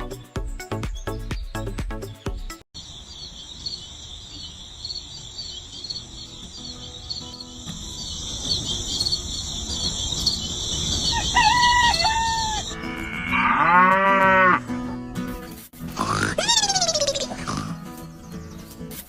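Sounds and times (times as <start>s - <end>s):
crickets chirping: 2.8s - 12.8s
cow mooing: 11.8s - 15.0s.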